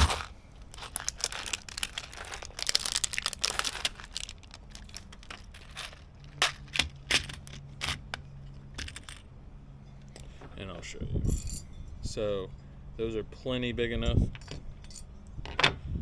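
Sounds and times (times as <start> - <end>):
plastic kit rustling and crinkling: 0.0 - 8.2.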